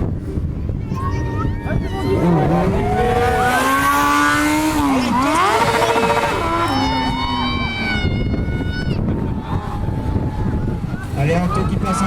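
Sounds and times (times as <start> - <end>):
motorcycle engine revving: 2.1 - 7.4.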